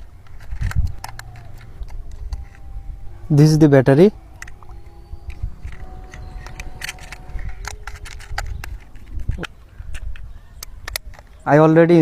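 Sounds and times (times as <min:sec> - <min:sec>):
battery clicking into plastic compartment: 0:00.2 - 0:02.7, 0:04.3 - 0:11.4.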